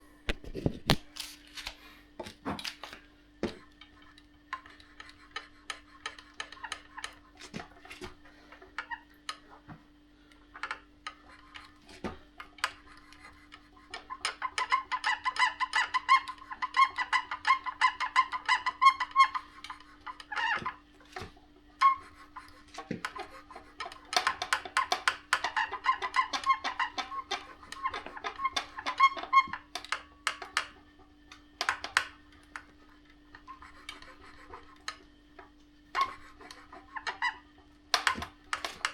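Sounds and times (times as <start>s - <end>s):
faint steady hum: 0.0s - 38.9s
high squeaky creaking: 14.0s - 21.2s, 21.8s - 30.9s, 31.6s - 38.9s.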